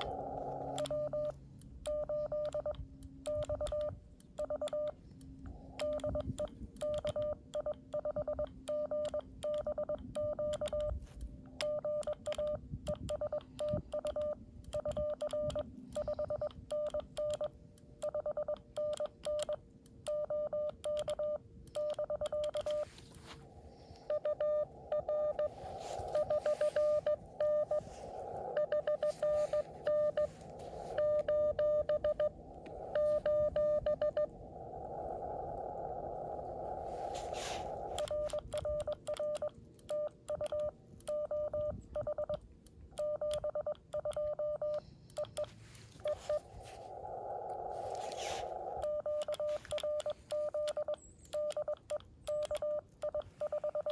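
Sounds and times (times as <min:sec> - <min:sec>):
morse code tone: 0:00.0 - 0:05.0, 0:24.0 - 0:34.3, 0:37.2 - 0:42.4, 0:43.0 - 0:46.5, 0:48.2 - 0:53.9
receiver hiss: 0:22.6 - 0:39.1, 0:44.8 - 0:50.7.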